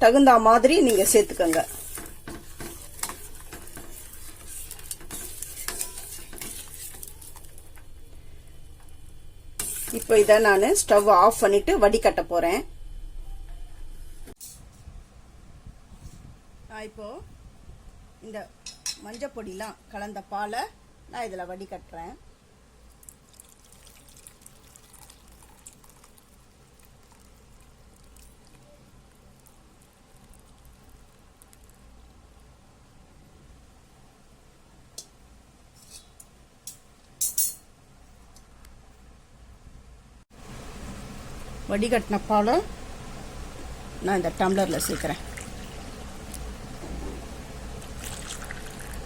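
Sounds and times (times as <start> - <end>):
spoon scraping and clinking pan: 0.8 - 7.4, 35.8 - 37.6
liquid trickling through strainer: 23.0 - 28.6, 47.8 - 49.0.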